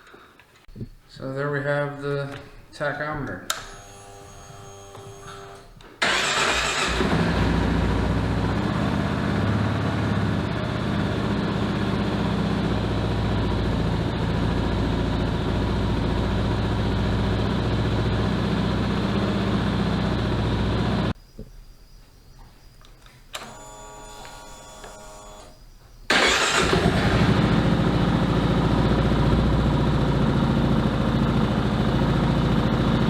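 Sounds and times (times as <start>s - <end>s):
motorcycle engine starting and idling: 3.5s - 21.2s, 23.4s - 33.0s.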